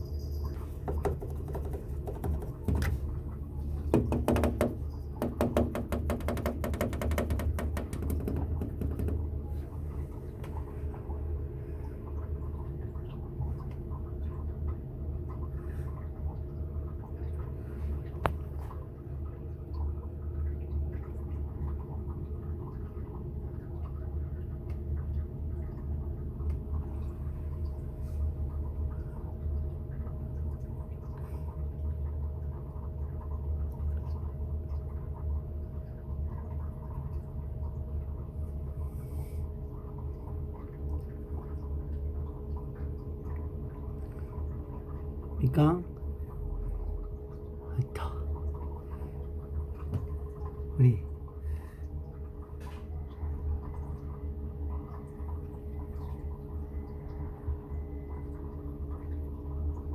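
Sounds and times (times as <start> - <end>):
steady low hum: 0.0 - 59.9
cat clawing at a door: 0.9 - 3.0, 4.0 - 9.3.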